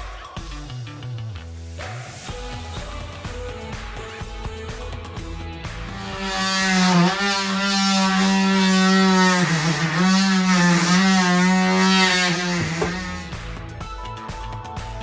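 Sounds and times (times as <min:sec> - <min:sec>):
power tool motor running: 0:06.0 - 0:13.3.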